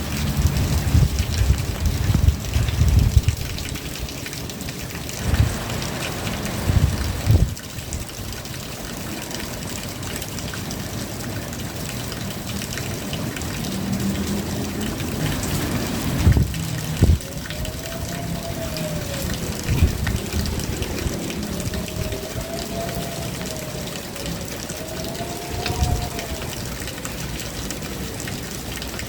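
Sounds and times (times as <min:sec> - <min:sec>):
low rumbles: 0:00.0 - 0:04.1, 0:14.6 - 0:27.9
steady rain falling: 0:00.0 - 0:29.0.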